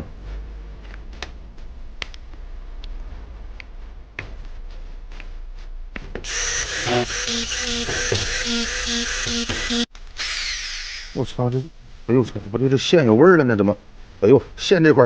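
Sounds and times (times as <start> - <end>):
electric drill motor whirring: 6.2 - 11.1.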